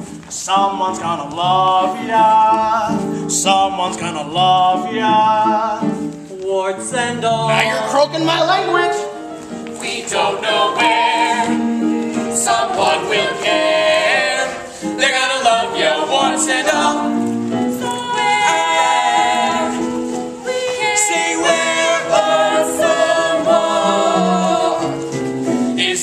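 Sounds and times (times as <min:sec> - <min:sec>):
instrumental accompaniment: 0:00.0 - 0:26.0
voices singing a show tune: 0:09.8 - 0:25.1.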